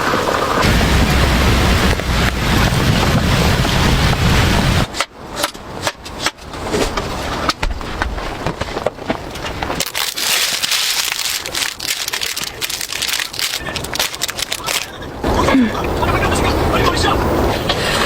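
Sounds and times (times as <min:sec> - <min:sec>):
low wind rumble: 0:00.0 - 0:04.9, 0:09.0 - 0:18.0
campfire crackling and popping: 0:09.3 - 0:15.1.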